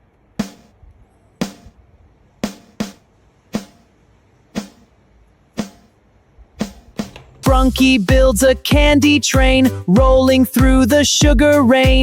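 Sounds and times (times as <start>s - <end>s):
sparse drum hits: 6.6s - 8.3s.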